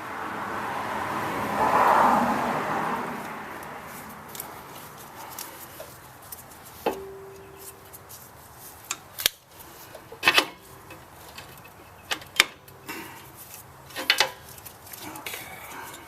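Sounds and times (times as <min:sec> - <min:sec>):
metal tools clinking: 0:04.3 - 0:16.0.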